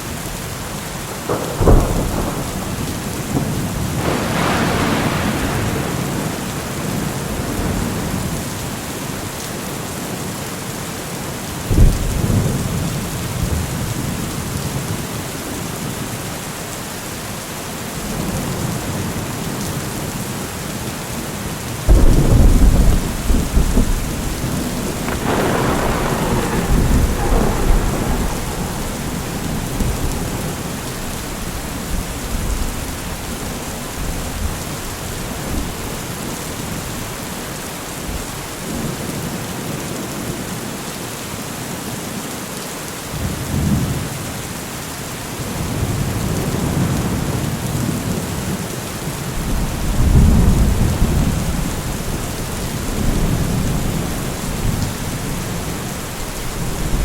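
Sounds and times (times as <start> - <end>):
thunder clap and rumble: 0.0 - 10.3, 11.5 - 16.1, 21.8 - 40.6, 45.4 - 57.0
steady rain: 0.0 - 57.0.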